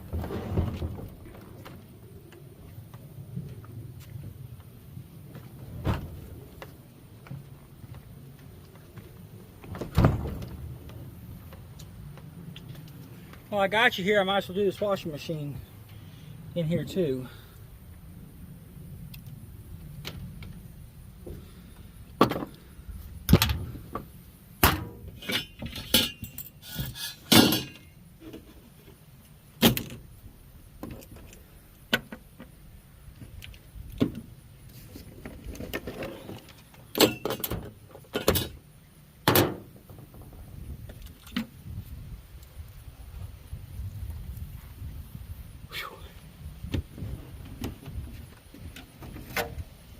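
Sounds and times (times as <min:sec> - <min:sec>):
metal scrap clanking: 0:24.6 - 0:28.5, 0:37.0 - 0:38.6.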